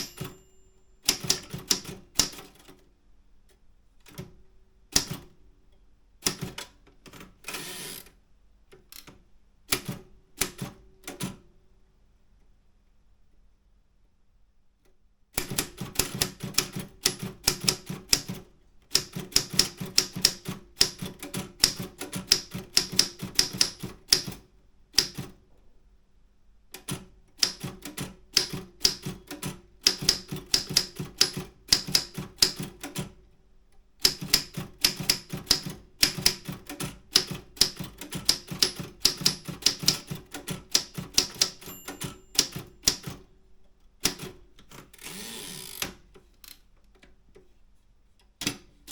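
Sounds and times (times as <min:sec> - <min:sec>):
manual typewriter keystrokes: 0:00.0 - 0:00.4, 0:01.0 - 0:02.8, 0:04.9 - 0:05.3, 0:06.2 - 0:08.0, 0:08.9 - 0:11.4, 0:15.4 - 0:25.4, 0:26.7 - 0:33.2, 0:34.0 - 0:43.3, 0:44.0 - 0:46.6.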